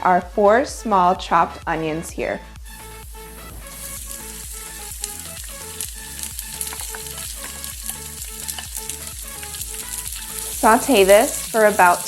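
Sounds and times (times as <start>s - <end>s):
background music with a beat: 0.0s - 12.0s
onions sizzling in hot oil: 2.7s - 12.0s.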